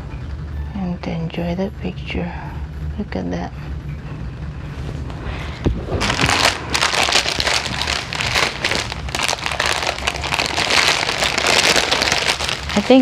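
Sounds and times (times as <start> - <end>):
plastic crinkling: 6.0 - 13.0.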